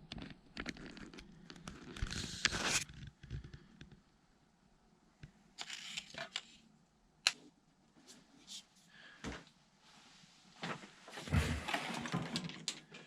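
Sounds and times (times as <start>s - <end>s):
scraping and rustling: 10.6s - 12.9s.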